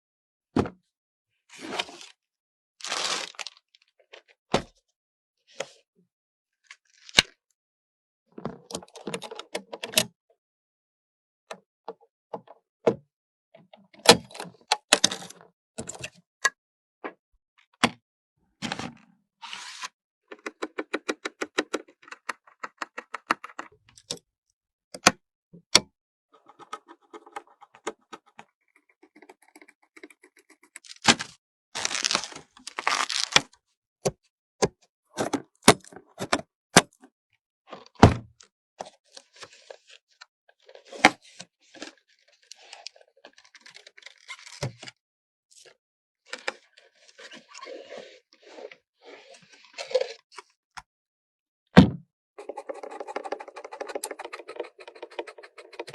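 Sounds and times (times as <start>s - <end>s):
plastic and metal clicks and knocks: 20.3s - 24.2s.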